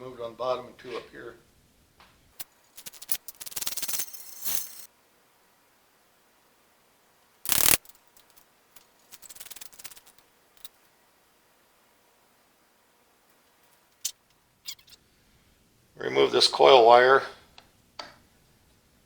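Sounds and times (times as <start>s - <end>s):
wrench ratchet clicking: 2.8s - 4.6s, 7.5s - 8.0s.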